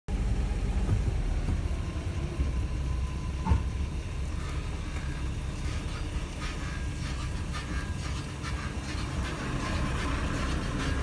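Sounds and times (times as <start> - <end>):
car driving low rumble: 0.1 - 6.5
suspension clunk: 0.5 - 3.9.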